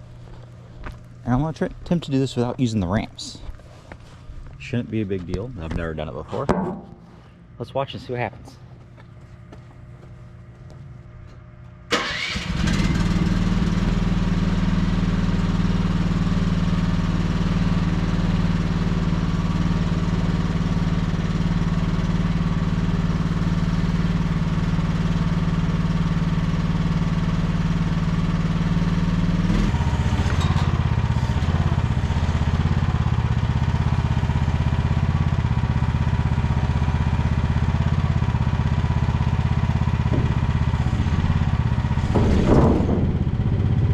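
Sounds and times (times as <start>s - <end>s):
excavator engine starting and running: 11.4s - 43.9s.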